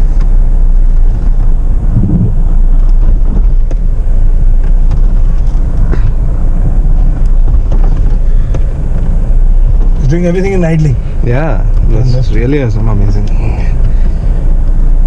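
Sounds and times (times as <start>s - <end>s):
wind on microphone: 0.0s - 10.0s
diesel engine idling: 0.0s - 15.0s.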